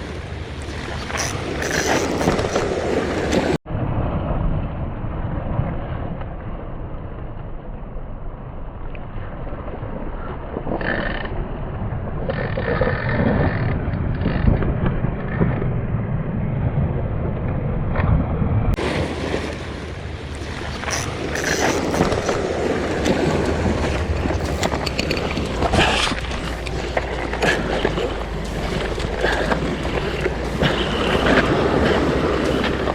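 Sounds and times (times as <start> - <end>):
sea surf: 0.0 - 10.8, 16.7 - 32.9
wind on microphone: 0.0 - 32.9.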